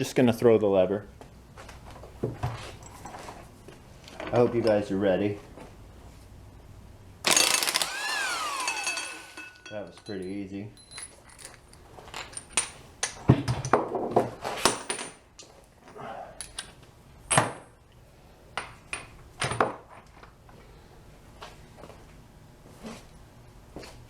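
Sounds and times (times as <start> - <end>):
metal parts and tools clinking: 7.3 - 13.8.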